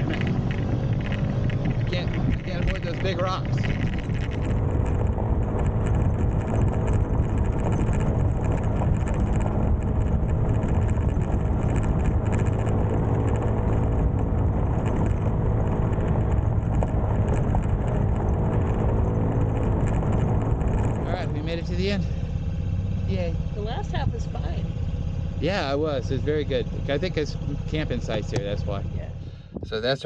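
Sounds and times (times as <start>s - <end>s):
motorbike engine running: 0.0s - 30.0s.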